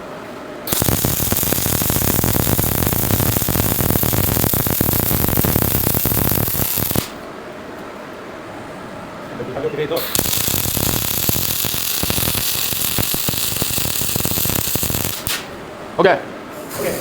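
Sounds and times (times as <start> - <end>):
welding arc crackling: 0.7 - 7.2, 10.0 - 15.5.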